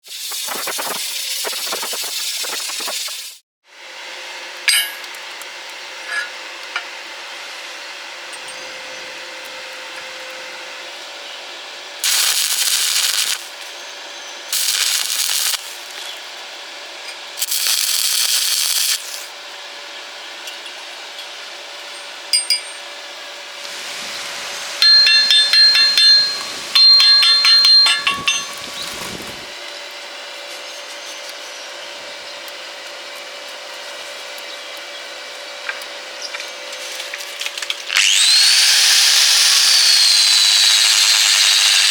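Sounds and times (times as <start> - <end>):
arc welding crackle and hiss: 0.0 - 3.4, 12.0 - 19.4, 23.5 - 29.8, 32.4 - 41.9.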